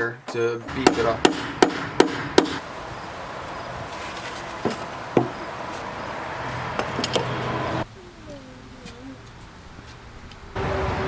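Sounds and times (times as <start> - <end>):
background buzz: 0.0 - 11.0
hammer striking nails into wood: 0.7 - 2.6.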